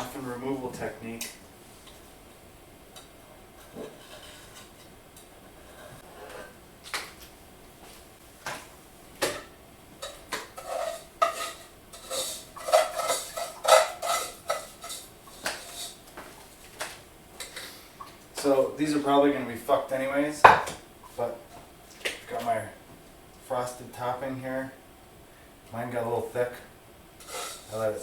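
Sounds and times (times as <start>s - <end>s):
clinks and scrapes: 3.6s - 6.6s, 10.0s - 16.0s, 27.2s - 27.8s
utensil knocking on muffin pan: 20.5s - 20.8s.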